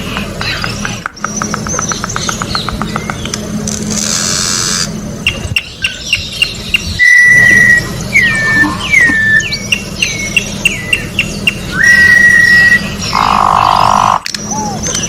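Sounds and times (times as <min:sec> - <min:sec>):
bird singing clear whistles: 0:05.6 - 0:13.1
loud harsh buzzy sound: 0:11.6 - 0:14.3.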